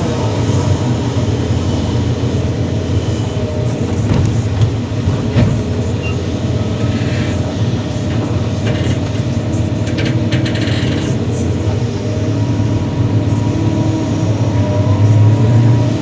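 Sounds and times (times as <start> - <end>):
excavator diesel engine running: 0.0 - 16.0
machine knocks and clatter: 3.7 - 7.4, 8.0 - 11.3.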